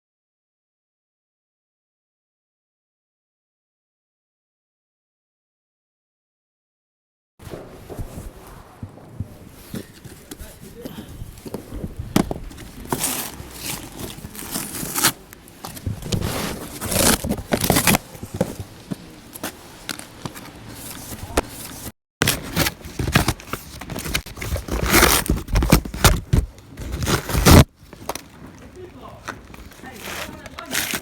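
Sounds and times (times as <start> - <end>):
fireworks firing rapid shots: 7.4 - 9.1.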